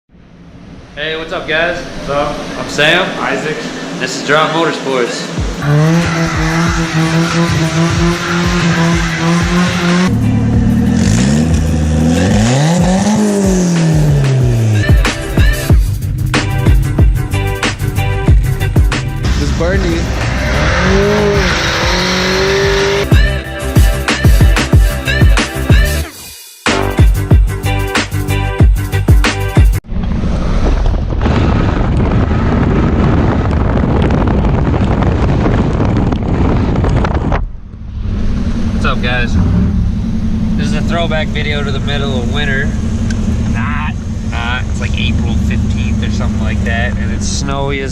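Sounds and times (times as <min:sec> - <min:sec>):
moving vehicle rumble: 0:00.1 - 0:23.4, 0:29.7 - 0:47.9
car engine revving: 0:00.2 - 0:23.3, 0:36.4 - 0:47.9
regular thumps: 0:12.7 - 0:22.0
wind buffeting microphone: 0:29.9 - 0:40.6.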